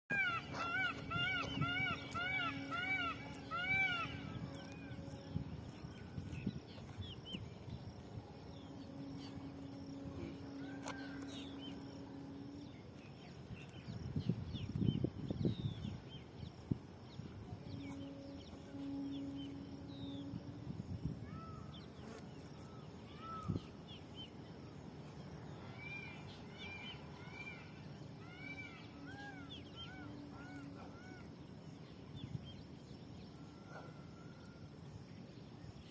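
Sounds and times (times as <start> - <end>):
birds chirping: 0.1 - 7.6
low hum: 0.1 - 35.9.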